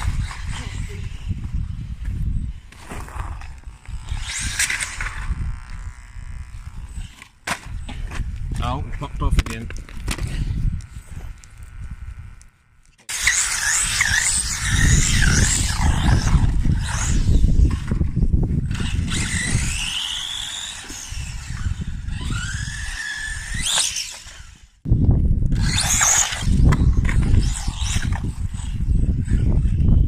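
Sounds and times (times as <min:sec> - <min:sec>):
electric motors whining: 0:00.0 - 0:24.8, 0:25.4 - 0:30.0.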